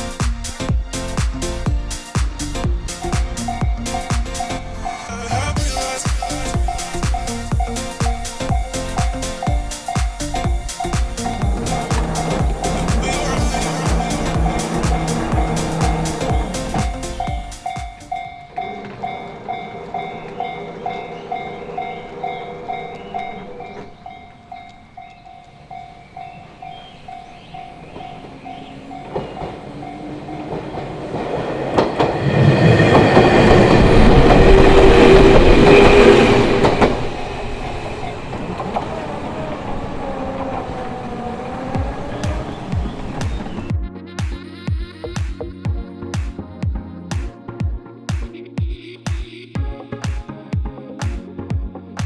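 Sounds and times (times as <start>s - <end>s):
electric train passing: 0.0s - 43.7s
level crossing bell ringing: 3.4s - 30.9s
train wheels clickety-clack: 5.6s - 24.1s, 27.7s - 43.7s.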